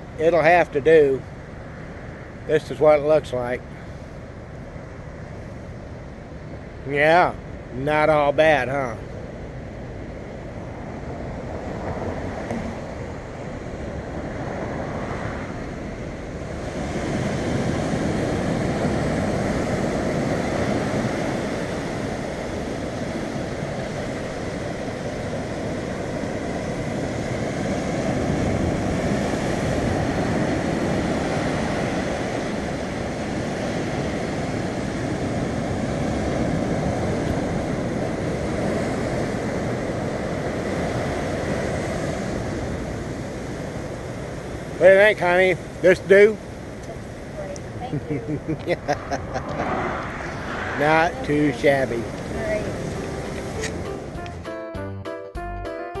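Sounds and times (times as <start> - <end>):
ocean surf washing on shore: 0.0 - 54.4
wind on microphone: 8.8 - 44.8, 46.5 - 54.2.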